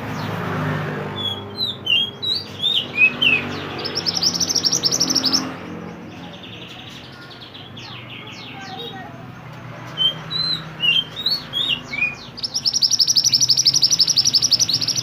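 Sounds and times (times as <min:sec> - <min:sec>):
bird singing whistles and chirps: 0:01.2 - 0:05.5, 0:10.0 - 0:15.0.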